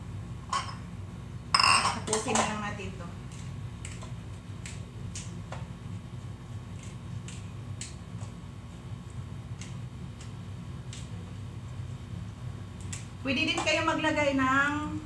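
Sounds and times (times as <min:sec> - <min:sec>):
steady low hum: 0:00.0 - 0:15.0
faint kitchen clicks and taps: 0:01.6 - 0:05.7, 0:12.8 - 0:14.0.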